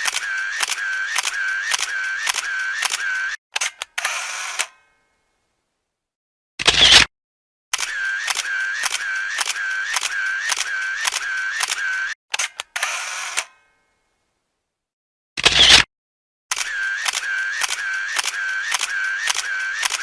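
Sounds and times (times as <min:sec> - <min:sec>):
camera motor-drive whir: 0:00.0 - 0:03.4, 0:07.8 - 0:12.2, 0:16.5 - 0:20.0
camera shutter clicks: 0:00.0 - 0:04.7, 0:07.8 - 0:13.5, 0:16.5 - 0:20.0.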